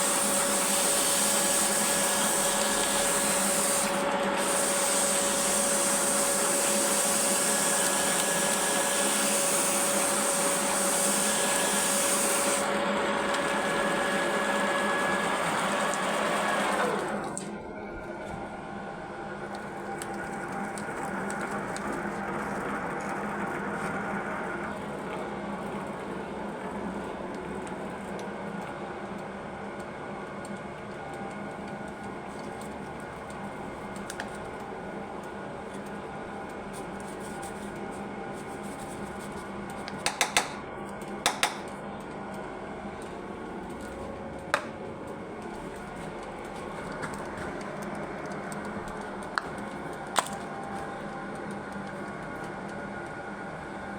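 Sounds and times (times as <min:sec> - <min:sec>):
lathe motor humming: 0:00.0 - 0:17.2.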